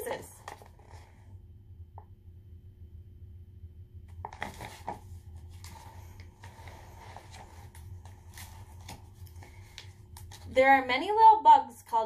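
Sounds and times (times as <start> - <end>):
low steady hum: 0.0 - 12.0
book pages turning: 0.4 - 1.2, 4.1 - 10.6
paper rustling: 0.4 - 1.2, 4.1 - 10.6.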